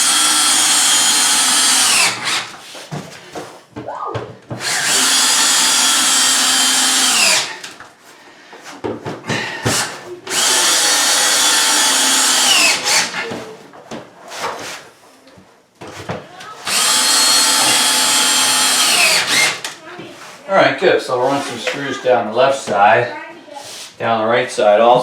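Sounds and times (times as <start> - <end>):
power drill driving screws: 0.0 - 2.6, 4.6 - 7.8, 9.7 - 13.4, 16.6 - 19.8.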